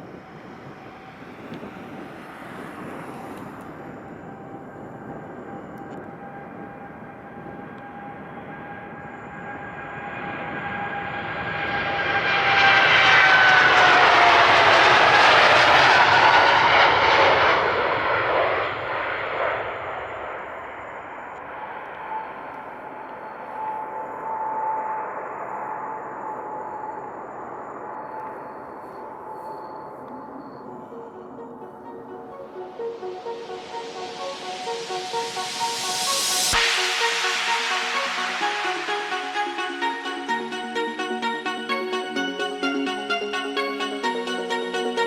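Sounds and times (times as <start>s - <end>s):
jet airliner taking off: 0.0s - 45.0s.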